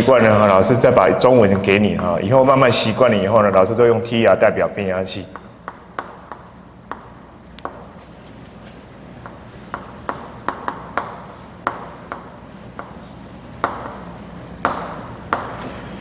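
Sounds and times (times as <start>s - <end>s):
writing on a board: 5.3s - 8.2s, 9.2s - 15.9s.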